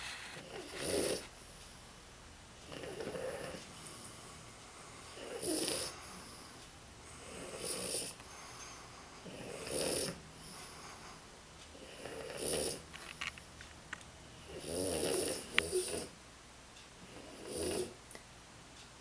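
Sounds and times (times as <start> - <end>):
dog snoring: 0.0 - 1.4, 2.6 - 8.6, 9.2 - 12.9, 14.3 - 16.2, 17.0 - 18.0
dog breathing: 2.7 - 12.8.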